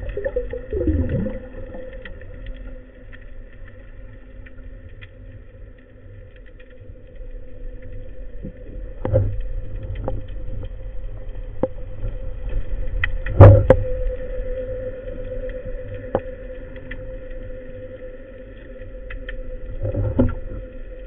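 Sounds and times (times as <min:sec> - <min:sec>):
underwater hum and rumble: 0:00.0 - 0:21.0.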